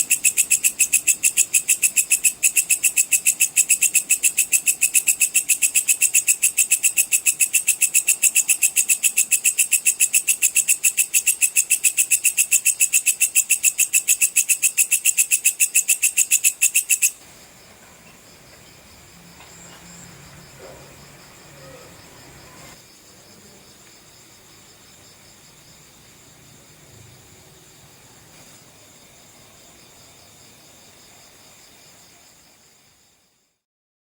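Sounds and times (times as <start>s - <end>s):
katydid stridulating shrill pulses: 0.0s - 17.2s.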